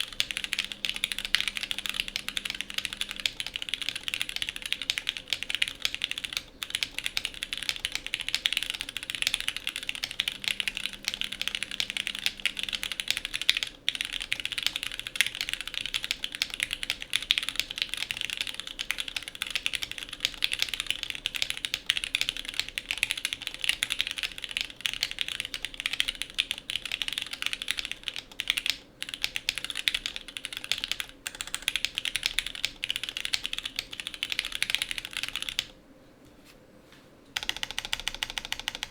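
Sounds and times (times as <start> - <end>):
fast typing on mechanical keyboard: 0.0 - 35.8, 37.4 - 38.9.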